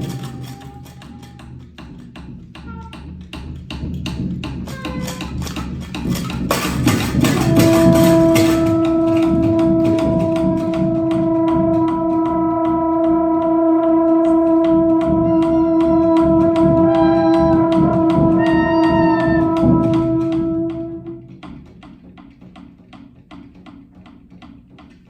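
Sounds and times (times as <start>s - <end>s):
trombone holding long note: 7.1s - 21.7s
short higher tones: 7.4s - 21.5s.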